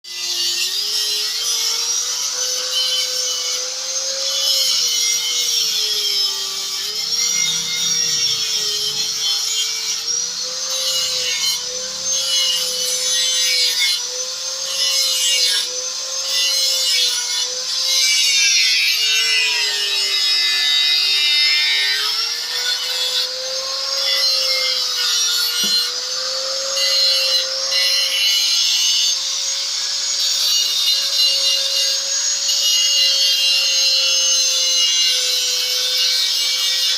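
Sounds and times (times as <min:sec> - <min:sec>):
hissing rasping of tool on material: 0:00.1 - 0:36.9
power tool motor whine: 0:00.1 - 0:36.9.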